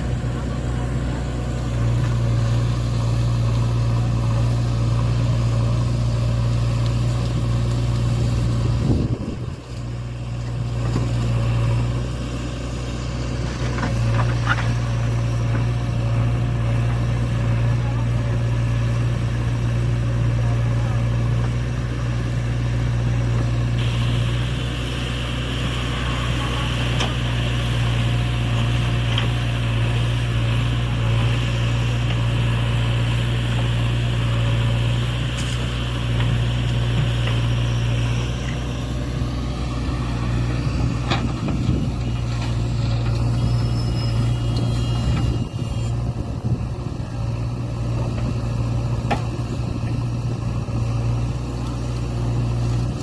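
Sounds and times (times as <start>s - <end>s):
diesel engine droning: 0.0s - 53.0s
hiss: 23.7s - 40.5s.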